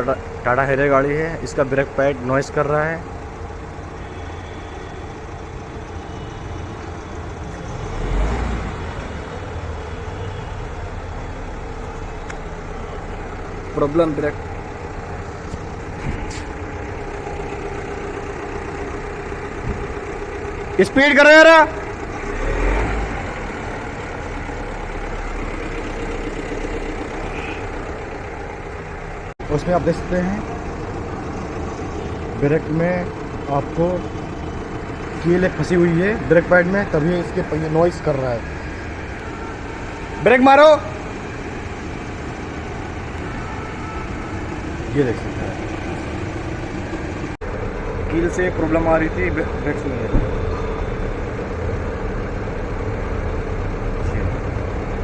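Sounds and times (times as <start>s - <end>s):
car running and wheel noise: 0.0s - 55.0s
brake scraping: 3.9s - 52.0s.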